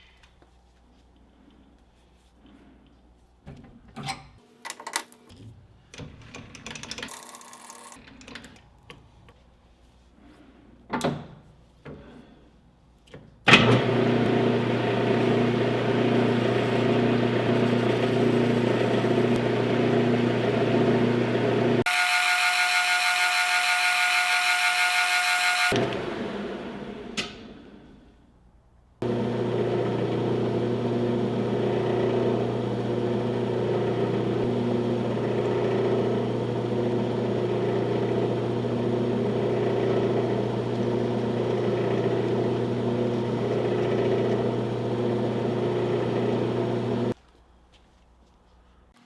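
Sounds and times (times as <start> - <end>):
electric motor winding down: 13.6 - 27.7, 29.0 - 47.2.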